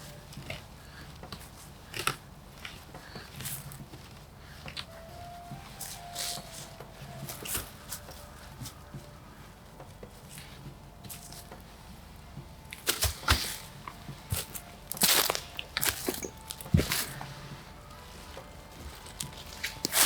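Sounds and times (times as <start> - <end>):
rustling on leaf litter: 0.0 - 20.0
sticks snapping: 12.6 - 20.0.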